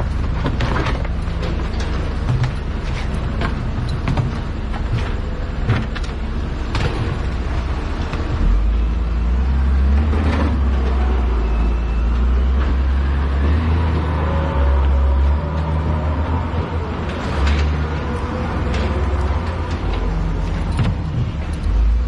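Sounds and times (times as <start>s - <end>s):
metal clanks and knocks: 0.0s - 8.5s, 17.0s - 22.0s
heavy machine engine rumble: 0.0s - 22.0s.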